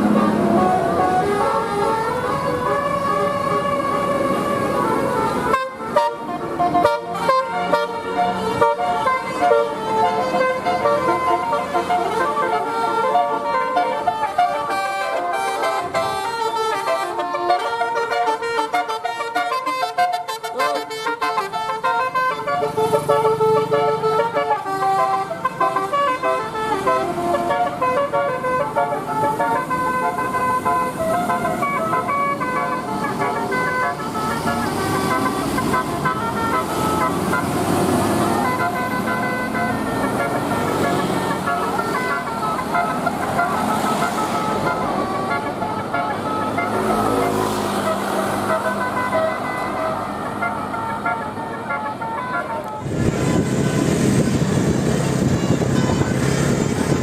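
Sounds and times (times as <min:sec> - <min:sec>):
road traffic: 0:00.0 - 0:57.0
vehicle horns tooting: 0:00.0 - 0:57.0.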